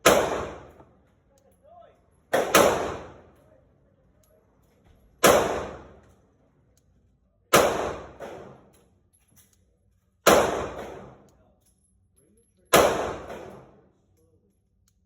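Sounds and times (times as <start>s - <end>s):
ringing echo of gunshot: 0.0s - 0.8s, 2.3s - 3.3s, 5.2s - 6.0s, 7.5s - 8.7s, 10.2s - 11.2s, 12.7s - 13.8s
pistol shots: 0.0s - 1.0s, 2.3s - 3.4s, 5.2s - 6.1s, 7.5s - 8.7s, 10.2s - 11.3s, 12.7s - 13.8s.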